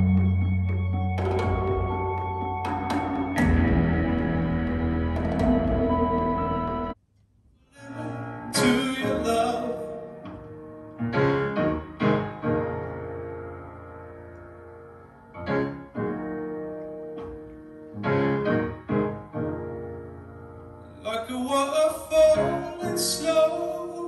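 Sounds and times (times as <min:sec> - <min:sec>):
piano chords ringing: 0:00.0 - 0:07.0, 0:07.8 - 0:24.0.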